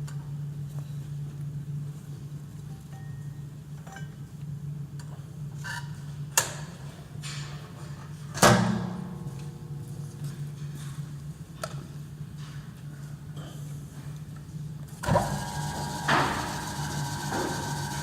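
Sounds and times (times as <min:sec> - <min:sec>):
pillar drill humming: 0:15.0 - 0:18.0.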